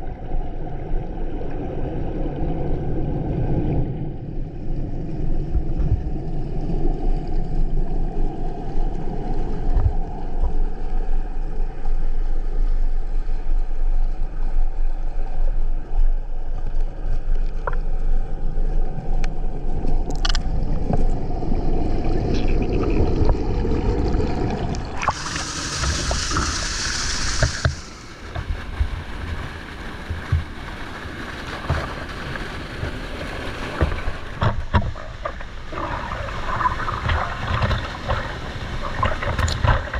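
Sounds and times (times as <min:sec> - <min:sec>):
waterfall rushing: 0:24.9 - 0:34.4
bright hissing splash: 0:25.0 - 0:32.4.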